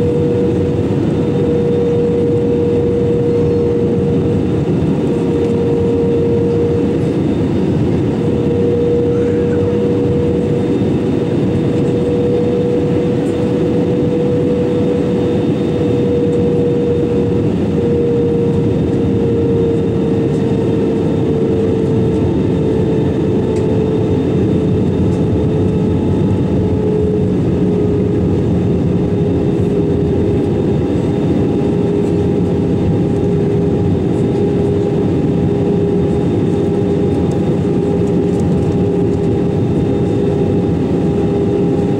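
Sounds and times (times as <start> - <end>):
aircraft cabin engine roar: 0.0 - 41.9.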